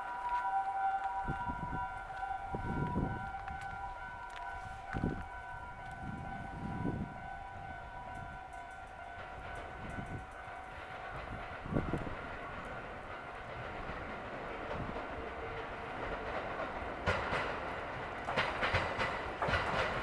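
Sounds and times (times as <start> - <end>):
level crossing bell ringing: 0.0 - 9.3
train passing: 0.0 - 20.0.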